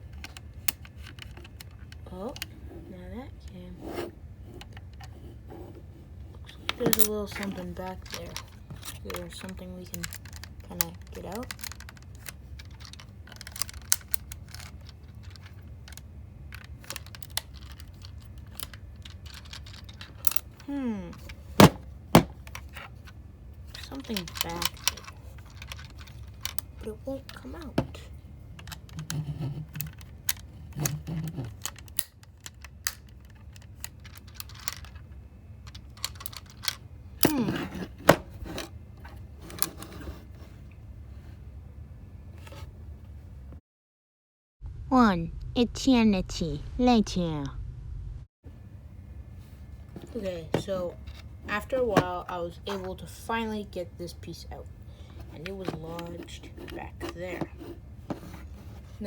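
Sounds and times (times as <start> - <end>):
plastic lego pieces clicking: 6.8 - 21.4, 23.7 - 27.9, 28.6 - 35.0, 35.6 - 37.4.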